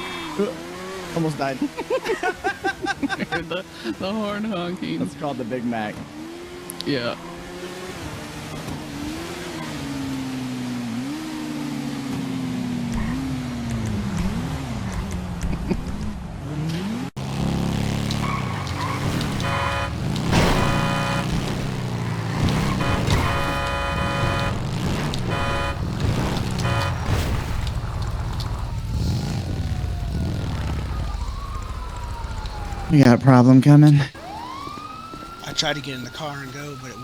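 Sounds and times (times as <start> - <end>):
car engine revving: 16.8 - 33.1
car horn honking: 17.2 - 28.8
siren sweeping: 17.2 - 33.4, 34.1 - 37.0.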